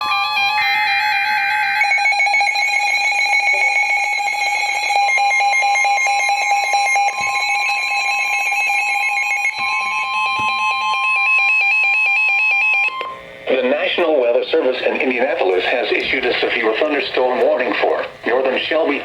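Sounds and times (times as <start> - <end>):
electronic alert tones: 0.1 - 13.2.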